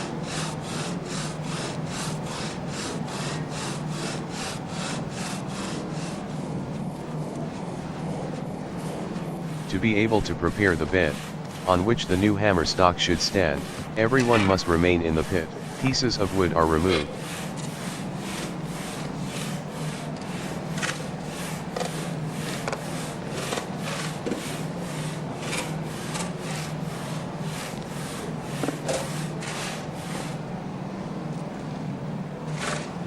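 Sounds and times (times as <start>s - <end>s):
hand saw cutting wood: 0.0s - 6.2s, 13.4s - 30.4s
steady low hum: 0.0s - 33.0s.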